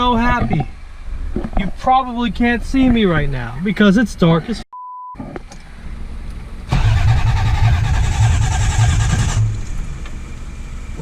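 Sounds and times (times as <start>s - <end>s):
car engine revving: 6.6s - 11.0s.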